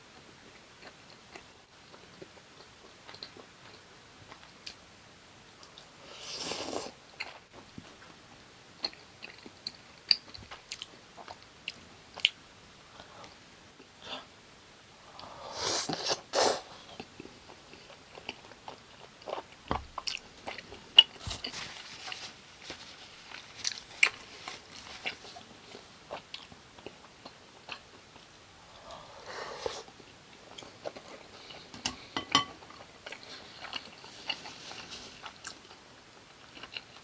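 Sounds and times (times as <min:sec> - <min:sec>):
close-miked chewing: 0:08.8 - 0:12.4, 0:16.8 - 0:37.0
food crunching: 0:17.0 - 0:37.0.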